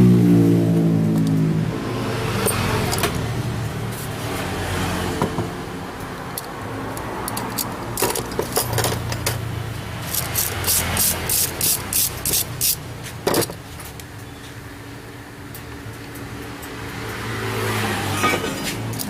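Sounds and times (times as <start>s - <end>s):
sharp metallic clicks and knocks: 5.2s - 14.1s.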